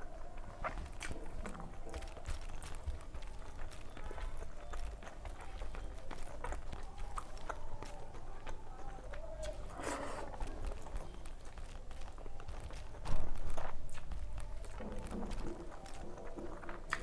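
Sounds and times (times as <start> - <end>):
chewing and biting: 0.0 - 17.0
wet mouth clicks: 9.4 - 10.9.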